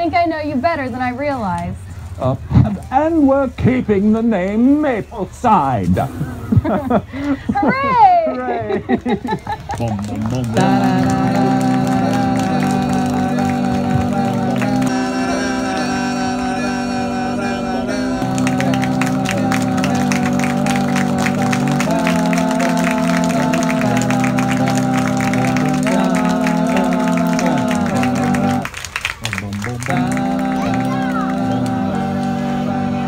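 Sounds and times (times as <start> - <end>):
held music chords: 10.4 - 33.0
quick steady beat: 10.6 - 28.7.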